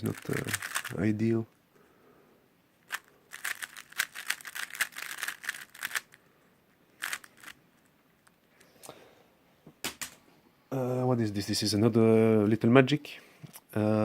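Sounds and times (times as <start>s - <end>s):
plastic cube clicks: 0.0s - 0.9s, 2.9s - 6.1s, 7.0s - 7.6s.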